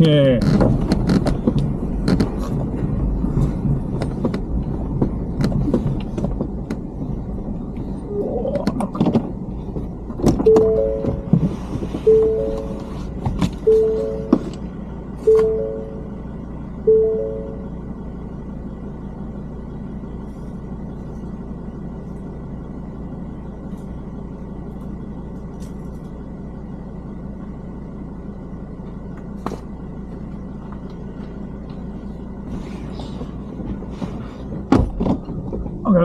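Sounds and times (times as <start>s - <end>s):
vehicle engine and tyres droning: 0.0s - 36.0s.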